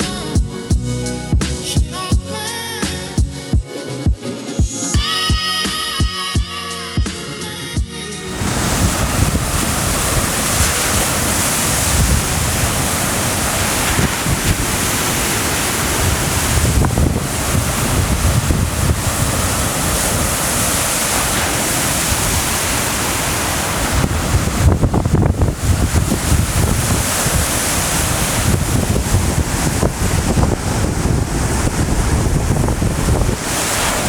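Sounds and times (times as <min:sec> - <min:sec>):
waves on shore: 0:08.2 - 0:34.0
wind buffeting microphone: 0:08.2 - 0:34.0.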